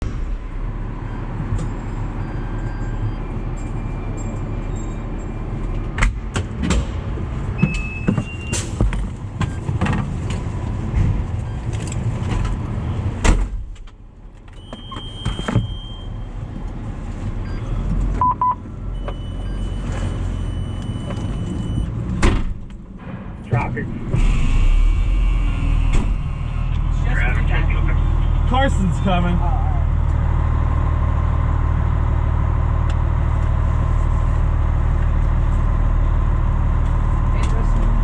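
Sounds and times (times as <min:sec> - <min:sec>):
fire truck engine running: 0:00.0 - 0:38.0
short electronic beeps: 0:17.4 - 0:21.9
knocks and clunks: 0:20.8 - 0:26.9.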